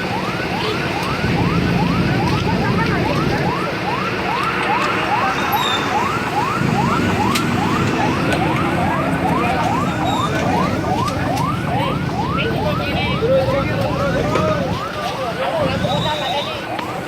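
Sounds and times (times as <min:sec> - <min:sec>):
siren yelp: 0:00.0 - 0:17.0
traffic rumble: 0:00.0 - 0:17.0.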